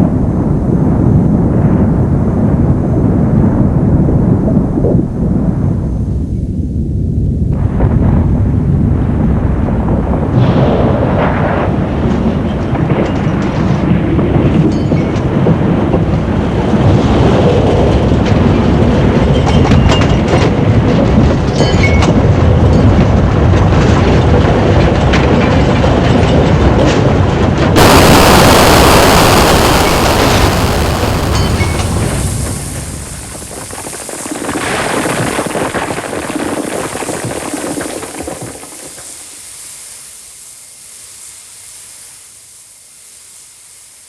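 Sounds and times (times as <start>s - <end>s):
loud hiss: 27.8s - 44.0s.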